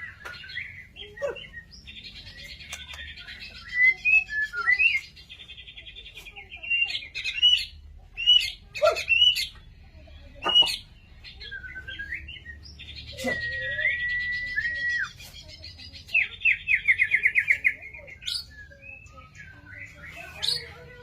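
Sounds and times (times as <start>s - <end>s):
bird singing loud whistles: 13.2s - 15.2s.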